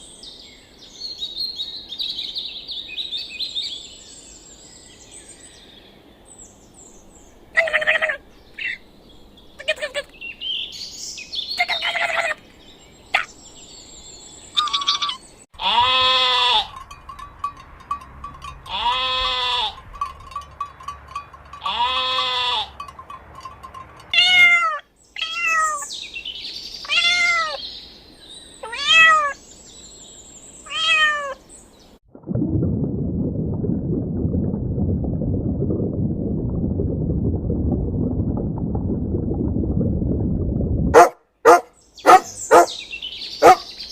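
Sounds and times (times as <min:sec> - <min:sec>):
animal chirps: 0:14.5 - 0:15.2
bleat-like animal calls: 0:14.6 - 0:16.8, 0:18.7 - 0:19.8, 0:21.6 - 0:22.8
low rushing noise: 0:32.2 - 0:41.0.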